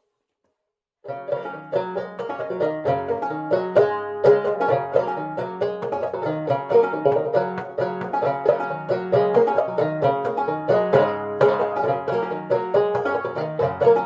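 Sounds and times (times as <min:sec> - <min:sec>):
banjo plucked notes: 0:01.0 - 0:14.0.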